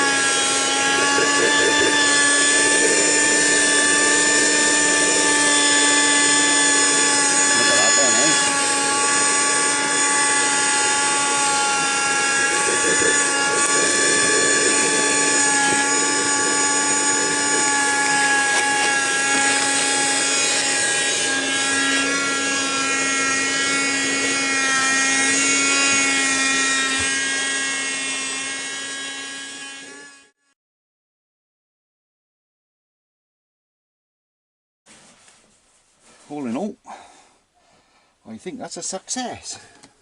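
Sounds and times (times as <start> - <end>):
vacuum cleaner motor whining: 0.0 - 30.4.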